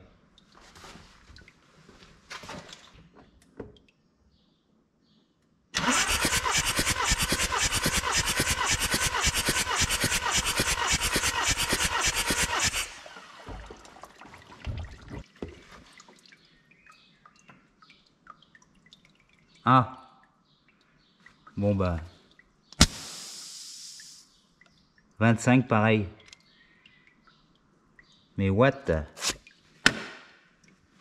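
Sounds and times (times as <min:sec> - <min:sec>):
diesel engine cranking: 0:05.8 - 0:13.8.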